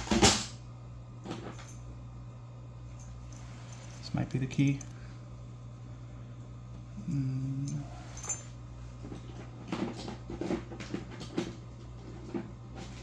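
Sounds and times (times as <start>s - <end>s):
keys rattling: 3.0s - 5.0s, 7.1s - 8.5s.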